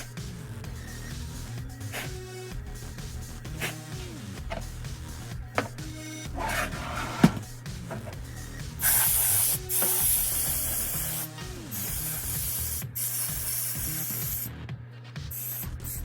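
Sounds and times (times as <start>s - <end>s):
background music: 0.0s - 16.0s
loud hissing spray: 8.8s - 14.5s.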